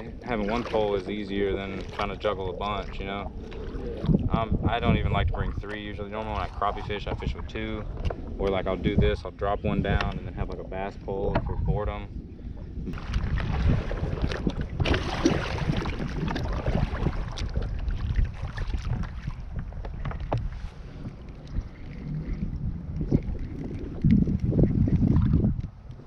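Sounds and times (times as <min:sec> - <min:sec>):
wind rumbling on microphone: 0:00.0 - 0:26.0
kayak and gear knocks and rustles: 0:13.0 - 0:21.2.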